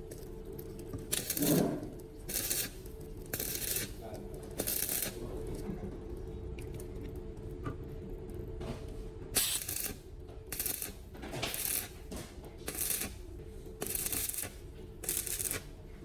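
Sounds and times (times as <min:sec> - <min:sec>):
rhythmic rasping strokes: 0:13.8 - 0:15.8.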